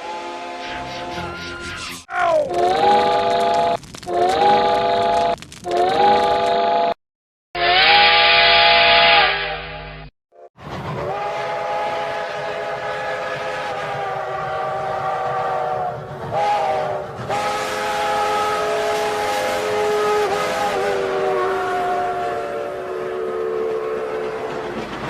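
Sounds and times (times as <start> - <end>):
steam locomotive chime whistle: 11.0 - 24.8.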